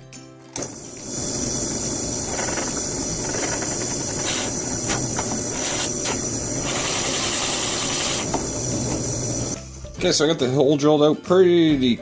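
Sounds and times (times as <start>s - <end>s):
drill motor with high whine: 0.8s - 8.4s.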